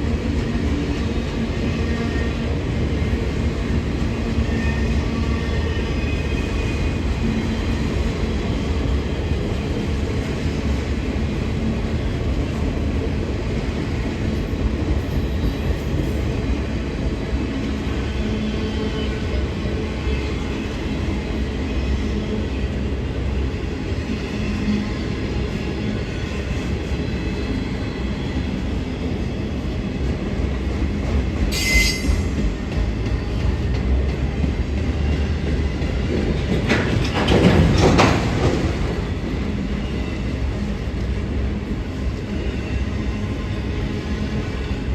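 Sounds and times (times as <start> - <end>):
freight train rumbling on rails: 0.0 - 44.9
sharp metallic screech: 31.5 - 32.4.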